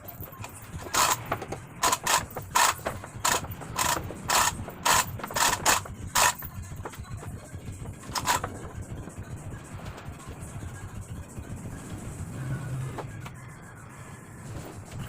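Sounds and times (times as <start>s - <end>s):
ratchet clicking: 0.2s - 7.1s, 8.0s - 8.7s.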